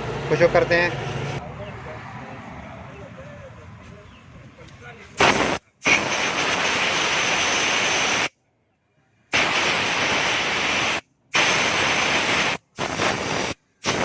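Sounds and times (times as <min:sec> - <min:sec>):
air blow gun hissing: 0:05.2 - 0:08.3, 0:09.3 - 0:14.0.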